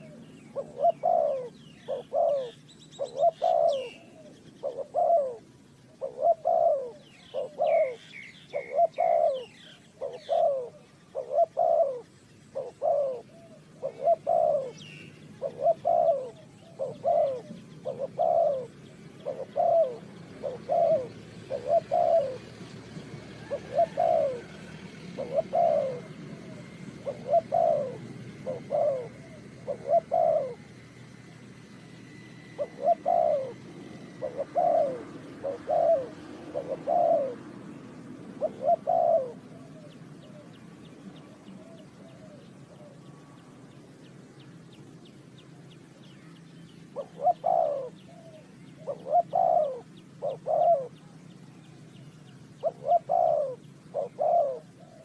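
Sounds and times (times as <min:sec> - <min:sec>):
dove cooing: 0:00.0 - 0:43.4, 0:46.3 - 0:55.0
small bird chirping: 0:00.0 - 0:55.0.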